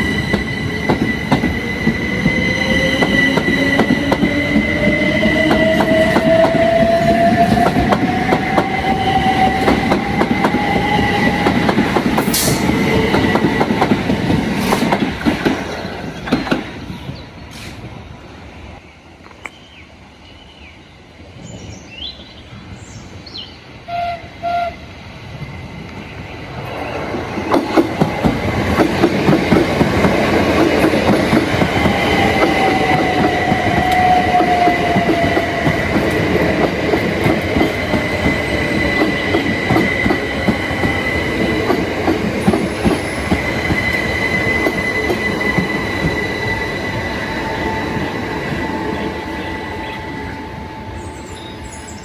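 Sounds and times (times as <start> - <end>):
train horn toots: 23.8 - 24.9.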